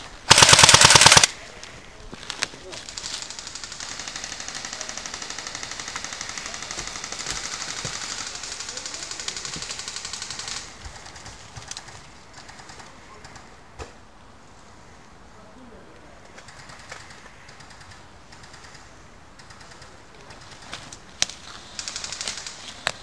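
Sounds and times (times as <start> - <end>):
airsoft gun full-auto burst: 0.3 - 1.3, 3.0 - 10.7, 21.7 - 22.6.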